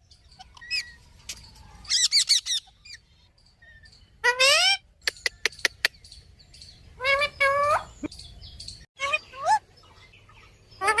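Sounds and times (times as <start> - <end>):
parrot squawking: 4.2 - 4.8.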